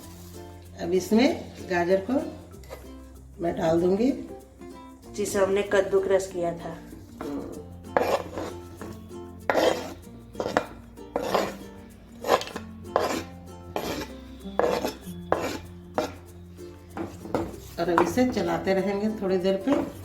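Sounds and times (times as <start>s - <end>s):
spoon scraping cooking pot: 2.6s - 3.0s, 7.1s - 18.7s, 19.4s - 20.0s.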